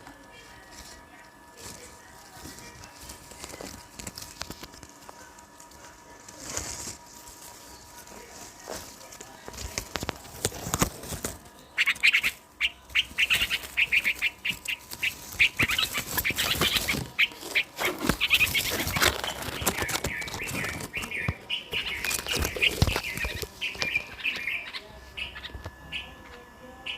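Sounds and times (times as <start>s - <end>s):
clicks and rustles: 0.0s - 24.6s
small bird chirping: 11.8s - 26.9s.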